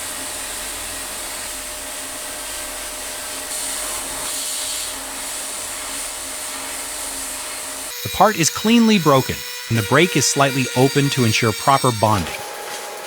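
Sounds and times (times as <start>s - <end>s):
sandblaster hissing against metal: 3.5s - 9.5s.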